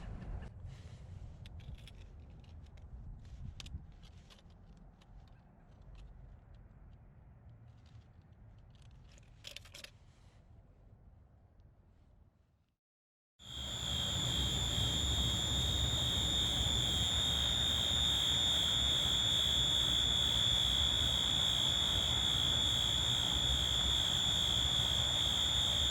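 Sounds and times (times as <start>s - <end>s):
steady high-pitched tone: 13.5s - 25.9s.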